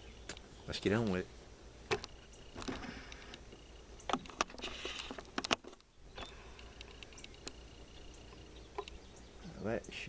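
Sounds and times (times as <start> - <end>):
low steady hum: 0.0 - 10.0
light handling clicks and knocks: 1.9 - 7.6, 8.3 - 9.1.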